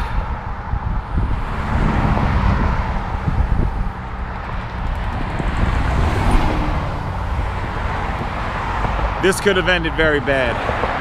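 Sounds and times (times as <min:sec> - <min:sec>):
road traffic passing: 0:00.0 - 0:11.0
wind buffeting microphone: 0:00.0 - 0:11.0.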